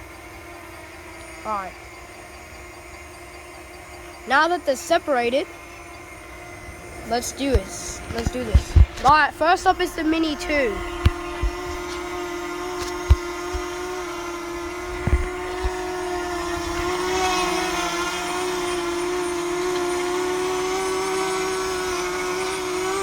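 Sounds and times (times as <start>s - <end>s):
drone propellers whining: 0.0s - 23.0s
low thumps: 7.2s - 18.2s.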